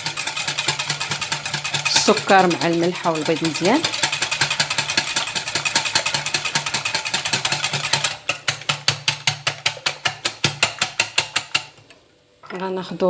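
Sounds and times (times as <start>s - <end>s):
whisk clicking against bowl: 0.0s - 12.0s.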